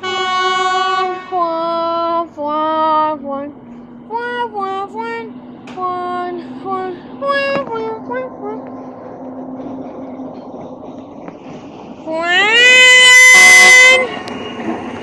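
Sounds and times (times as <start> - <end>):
steady low hum: 1.2 - 12.5
high voice singing: 4.1 - 8.8, 12.0 - 14.1.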